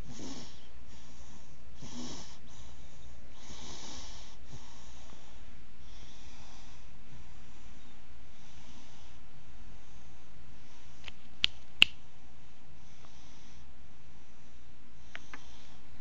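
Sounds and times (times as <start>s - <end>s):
cat snoring softly: 0.0s - 2.7s, 3.3s - 6.8s.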